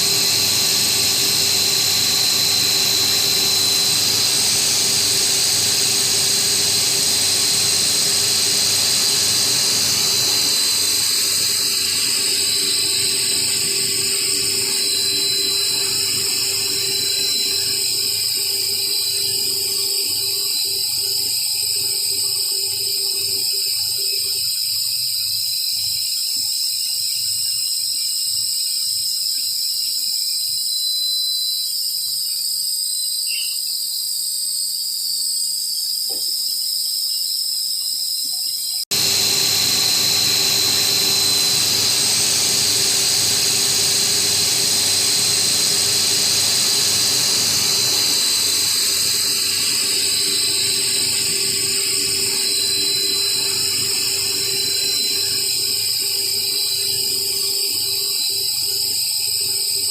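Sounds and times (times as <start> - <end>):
milling machine spindle whine: 0.0 - 59.9
low hum: 38.9 - 57.8.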